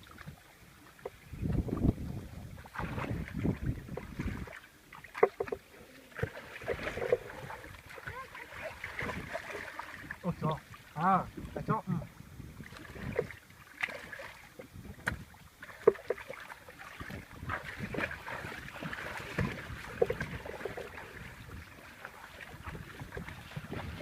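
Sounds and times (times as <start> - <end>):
water sloshing and splashing: 0.0 - 24.0
small knocks: 5.2 - 5.6.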